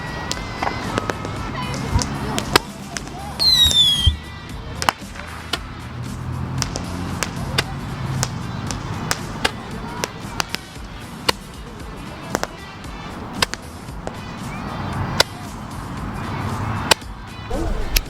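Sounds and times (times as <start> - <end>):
background music: 0.0 - 18.0
fireworks popping and cracking: 0.2 - 5.8, 6.5 - 14.3.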